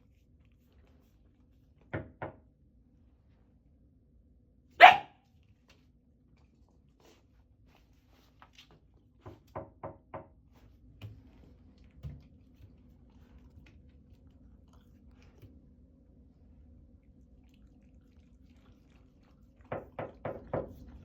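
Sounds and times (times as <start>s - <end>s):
puppy knocking in bathtub: 19.7s - 21.0s.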